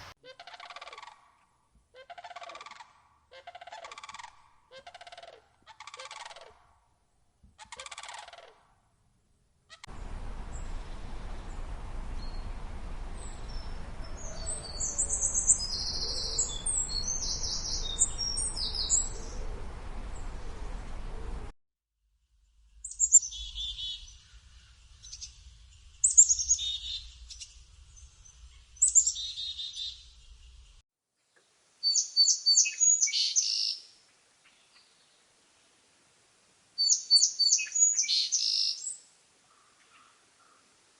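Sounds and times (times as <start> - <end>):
birds calling and singing: 9.9 - 21.4.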